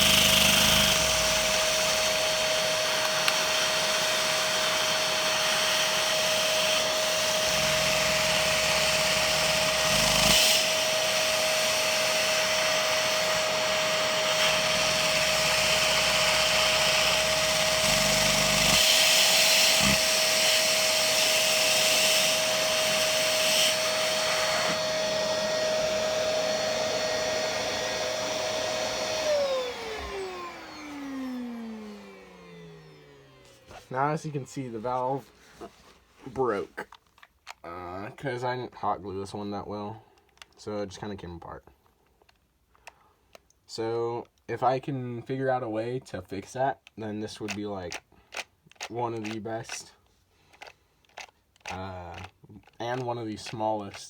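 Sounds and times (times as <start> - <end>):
vacuum motor whining: 0.0 - 35.7.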